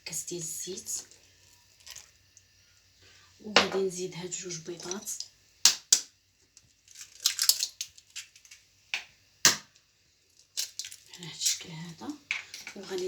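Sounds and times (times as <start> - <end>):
eggshells crackling: 0.6 - 2.4, 4.4 - 8.6, 10.3 - 13.0
eggs cracking against bowl: 1.0 - 2.5, 4.8 - 9.8, 10.4 - 13.0.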